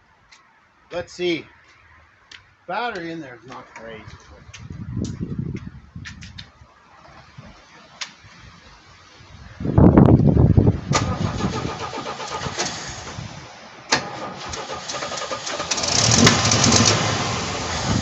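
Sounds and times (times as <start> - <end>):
engine cranking and running unevenly: 13.9 - 18.0.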